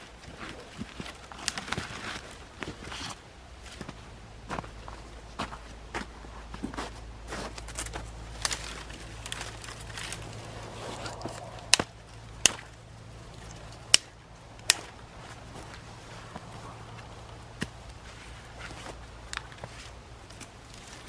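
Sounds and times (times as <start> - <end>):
light rustling and scuffing: 0.2 - 11.6.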